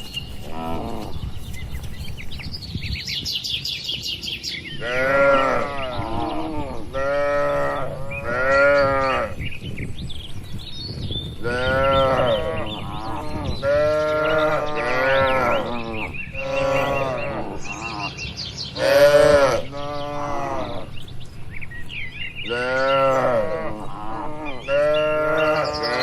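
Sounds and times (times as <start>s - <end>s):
cattle mooing: 4.8s - 9.4s, 11.4s - 18.2s, 18.8s - 21.0s, 22.4s - 26.0s.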